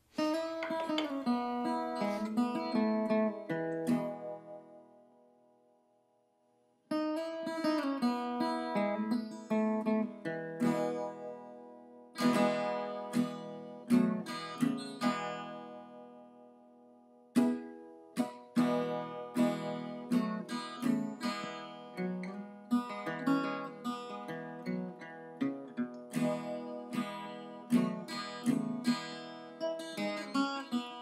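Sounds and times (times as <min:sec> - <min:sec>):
acoustic guitar fingerpicking: 0:00.0 - 0:05.1, 0:06.9 - 0:31.0.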